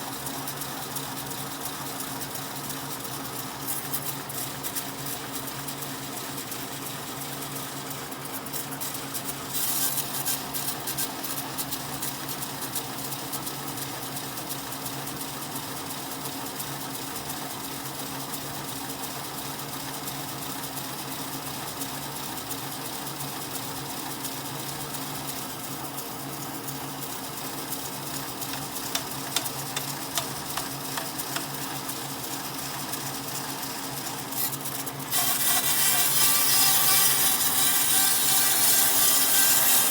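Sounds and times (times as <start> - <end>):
power tool motor running: 34.3 - 39.9.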